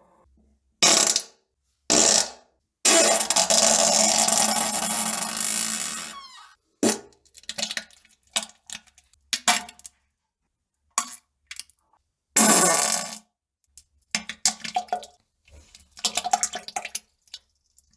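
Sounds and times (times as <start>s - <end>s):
wet sputtering fart: 3.5s - 6.6s
plops and drips into toilet water: 6.9s - 10.0s, 10.9s - 11.9s, 13.7s - 17.9s.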